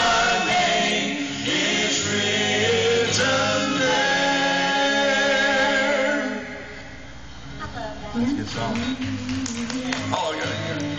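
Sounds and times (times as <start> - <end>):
vocal group singing gospel: 0.0 - 7.1.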